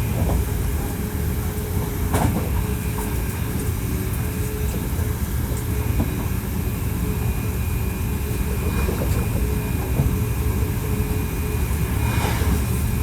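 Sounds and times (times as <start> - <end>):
train wheels rumbling on rail: 0.0 - 13.0.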